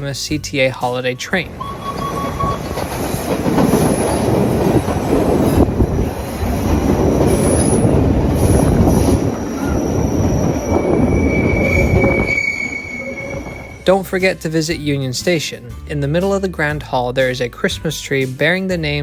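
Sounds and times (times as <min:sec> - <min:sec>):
train rumbling on rails: 0:01.3 - 0:14.0
steel wheels squealing: 0:01.5 - 0:04.3, 0:07.2 - 0:13.9.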